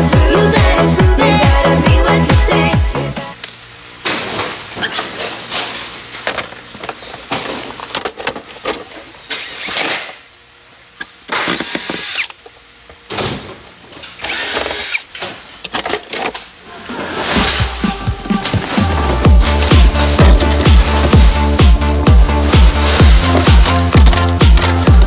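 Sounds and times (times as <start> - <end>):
power tool working metal: 14.2 - 15.1.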